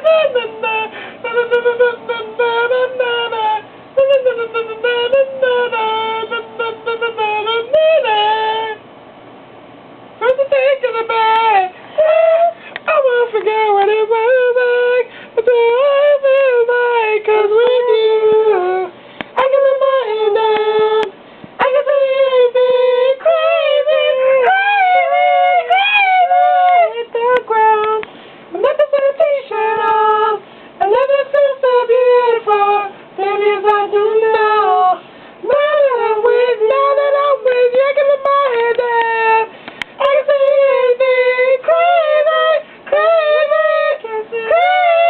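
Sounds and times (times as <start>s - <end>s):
high-pitched voice singing: 0.0s - 8.8s, 10.2s - 28.0s.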